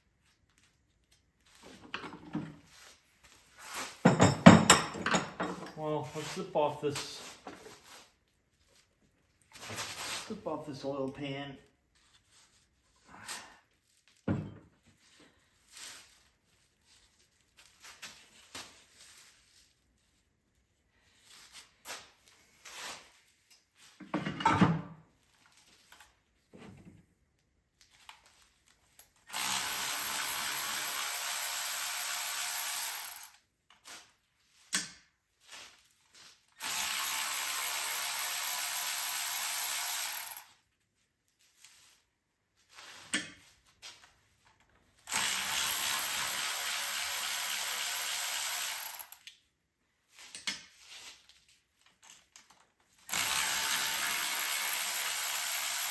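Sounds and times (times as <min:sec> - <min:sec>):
knocks of tools and parts: 0:01.8 - 0:02.6, 0:04.0 - 0:05.8, 0:14.2 - 0:14.8, 0:24.0 - 0:25.0
power tool running: 0:29.3 - 0:33.3, 0:36.6 - 0:40.4, 0:45.1 - 0:49.2, 0:53.1 - 0:55.9.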